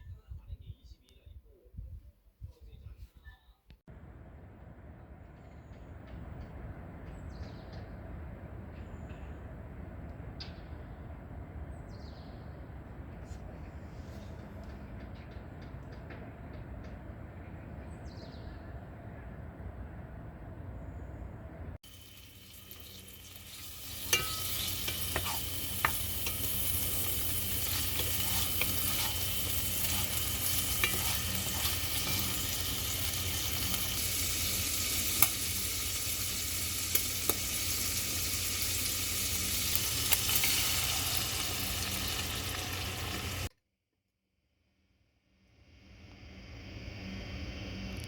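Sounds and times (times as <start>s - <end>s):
food sizzling in a pan: 21.8s - 43.5s.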